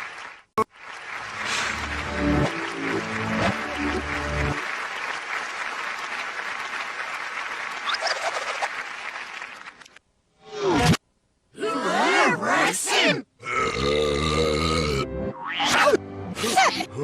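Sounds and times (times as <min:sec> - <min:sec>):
audience applauding: 0:00.0 - 0:10.0.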